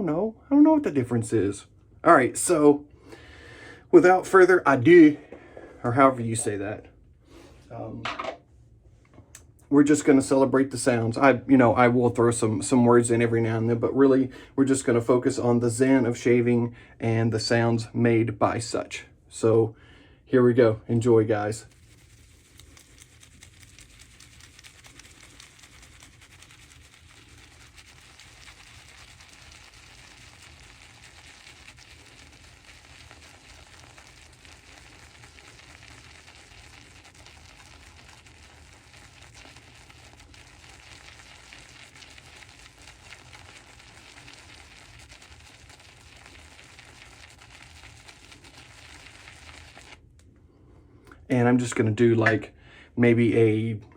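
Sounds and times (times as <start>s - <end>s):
shaving brush swishing lather: 21.4s - 50.0s.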